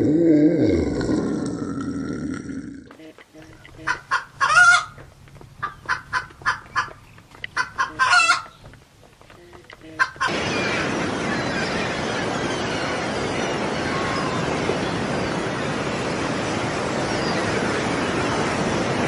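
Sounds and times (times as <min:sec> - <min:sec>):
chickens clucking: 0:02.9 - 0:10.4
steady rushing noise: 0:10.1 - 0:19.0.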